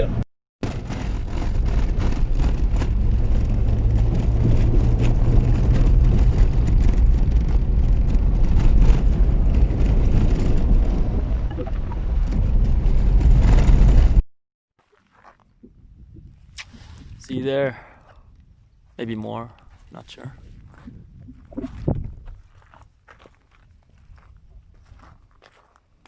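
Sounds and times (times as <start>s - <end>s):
car engine and road drone: 0.0s - 14.2s.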